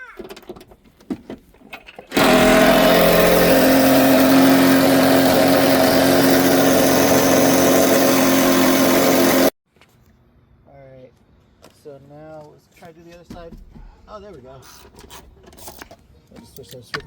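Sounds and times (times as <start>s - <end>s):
power tool driving a bolt: 2.1s - 9.5s.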